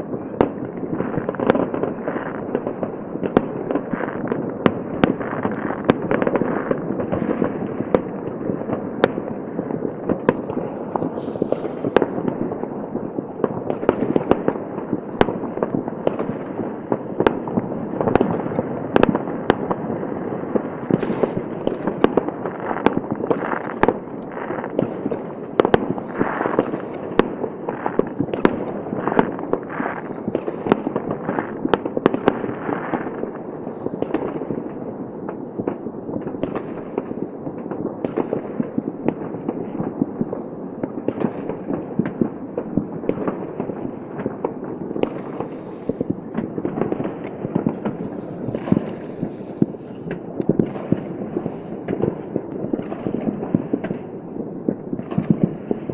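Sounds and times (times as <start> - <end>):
fireworks rumbling and crackling: 0.0 - 55.9
fireworks sharp bangs: 0.0 - 55.9.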